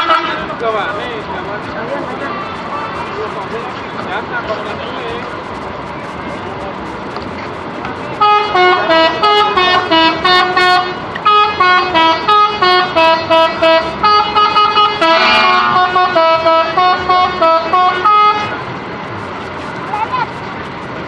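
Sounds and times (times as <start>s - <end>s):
bus musical horn playing tune: 0.0s - 0.5s, 8.2s - 18.6s.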